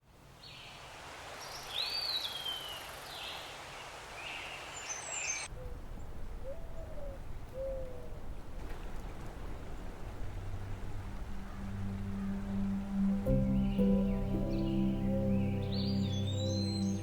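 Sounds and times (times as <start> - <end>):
birds calling: 9.8 - 17.0
low rumble: 10.8 - 17.0.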